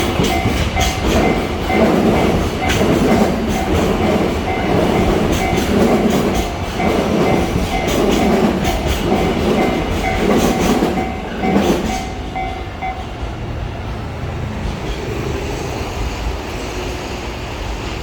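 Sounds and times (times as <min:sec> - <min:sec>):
crossing alarm beeping: 0:00.0 - 0:13.4
freight wagons clattering over rails: 0:00.0 - 0:13.5.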